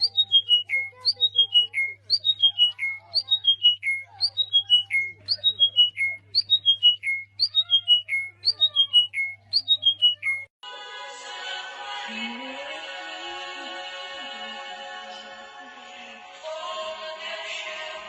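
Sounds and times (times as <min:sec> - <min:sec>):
bird whistling descending notes: 0:00.0 - 0:10.5
music: 0:10.6 - 0:18.0.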